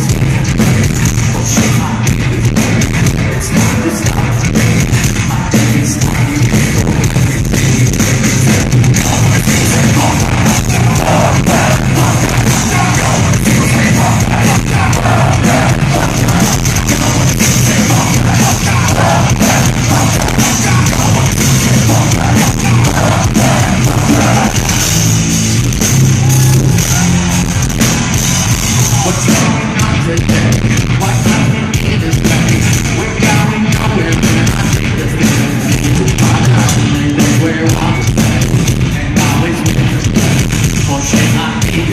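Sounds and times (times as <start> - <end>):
distorted live metal band: 0.0 - 41.9
shouted vocals: 9.1 - 24.9, 26.0 - 29.6.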